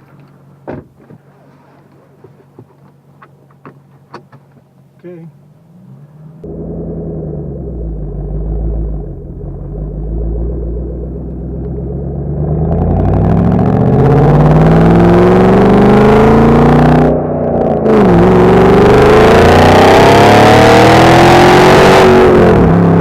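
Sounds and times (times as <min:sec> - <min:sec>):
car engine accelerating hard: 0:05.0 - 0:23.0.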